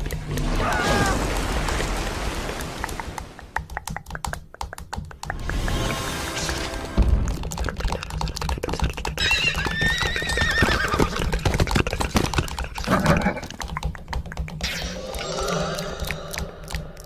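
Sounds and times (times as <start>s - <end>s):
horse whinnying: 9.2s - 11.4s.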